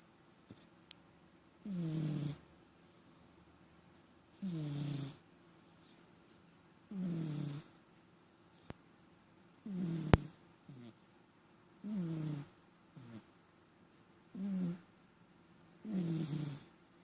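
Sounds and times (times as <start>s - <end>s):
cat snoring: 1.6s - 2.4s, 4.4s - 5.2s, 6.9s - 7.7s, 9.6s - 11.0s, 11.8s - 13.3s, 14.3s - 14.9s, 15.8s - 16.7s.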